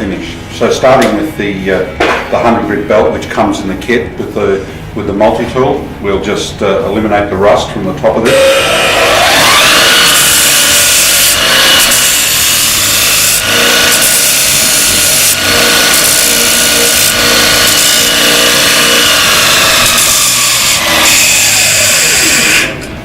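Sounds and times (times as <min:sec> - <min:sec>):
belt sander whine: 0:08.2 - 0:22.9
metal grinding on belt sander: 0:08.2 - 0:22.9.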